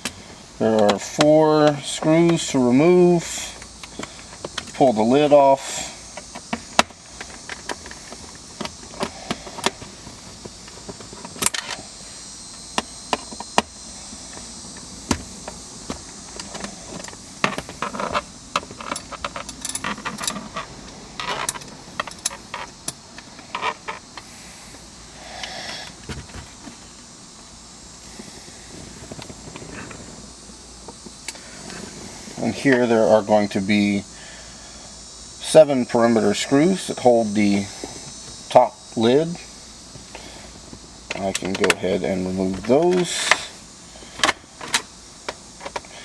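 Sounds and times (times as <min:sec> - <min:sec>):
small screws clinking: 0:17.8 - 0:24.0.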